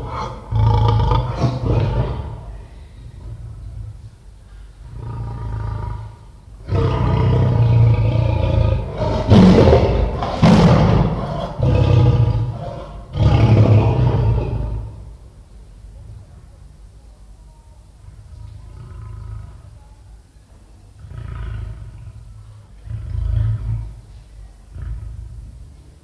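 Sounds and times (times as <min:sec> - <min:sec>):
lion roaring: 0:00.0 - 0:04.2, 0:04.8 - 0:15.2, 0:18.2 - 0:19.8, 0:21.0 - 0:25.7.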